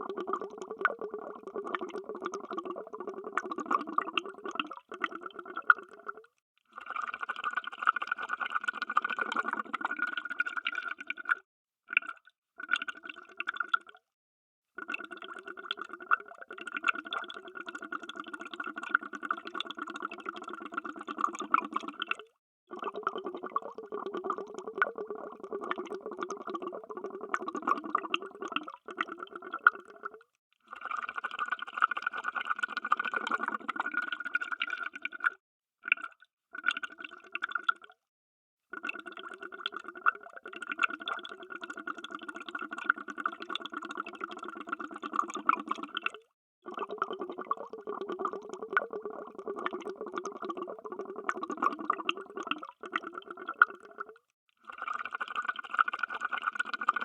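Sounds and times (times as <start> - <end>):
underwater bubbling: 0.0 - 6.3, 8.5 - 13.8, 14.8 - 30.3, 32.5 - 35.3, 38.8 - 54.2.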